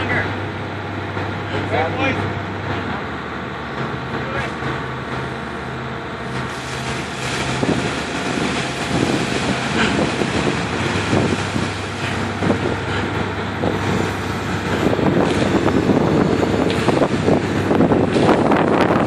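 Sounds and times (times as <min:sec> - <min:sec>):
excavator diesel engines running: 0:00.0 - 0:19.0
wind on microphone: 0:06.5 - 0:19.0.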